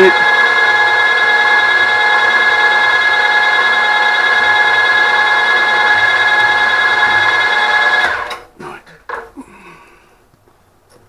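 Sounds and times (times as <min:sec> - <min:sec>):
machine spindle whining: 0:00.0 - 0:08.5.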